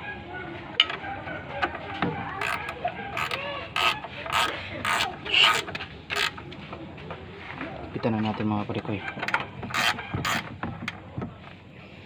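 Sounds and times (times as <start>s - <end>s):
scraping strokes on metal: 1.7s - 6.5s, 9.3s - 10.7s.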